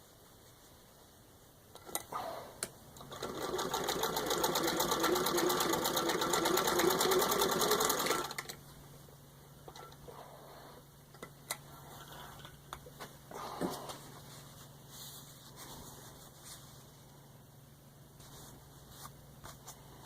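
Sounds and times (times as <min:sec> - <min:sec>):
sewing machine clicks: 0:01.8 - 0:08.6.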